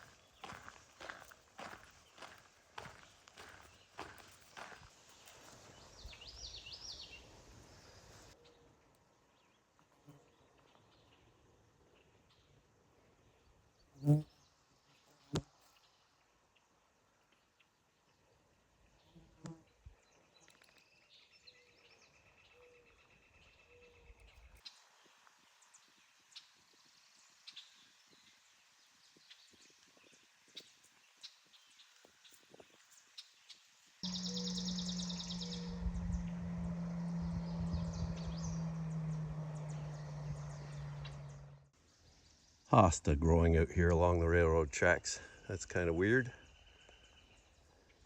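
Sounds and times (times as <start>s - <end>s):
footsteps on trail: 0.0s - 7.0s
high buzzing trill: 34.0s - 41.6s
steady low hum: 34.0s - 41.7s
short soft low notes: 34.1s - 41.7s.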